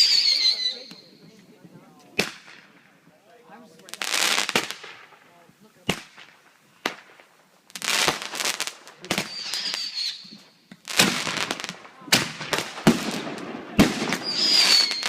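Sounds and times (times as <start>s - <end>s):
firework whistle: 0.0s - 1.2s, 9.1s - 10.4s, 14.1s - 15.0s
fireworks crackling hiss: 0.0s - 15.0s
firework bangs: 2.1s - 2.9s, 3.9s - 15.0s.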